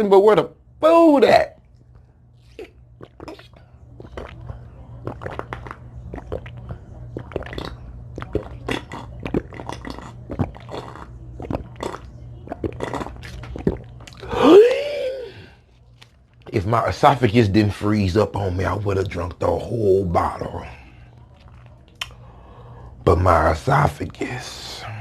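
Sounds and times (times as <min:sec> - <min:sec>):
low steady hum: 0:00.0 - 0:25.0
chewing with crunches: 0:01.7 - 0:14.4, 0:15.5 - 0:16.6, 0:20.3 - 0:22.4
wet mouth clicks: 0:02.4 - 0:14.3, 0:21.4 - 0:22.2.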